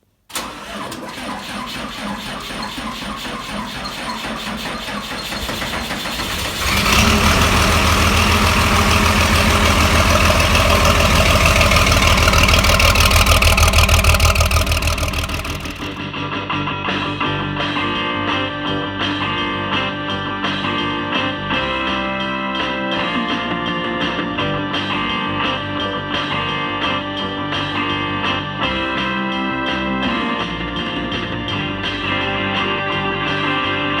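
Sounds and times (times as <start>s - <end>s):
engine cranking and running: 0.3s - 16.0s.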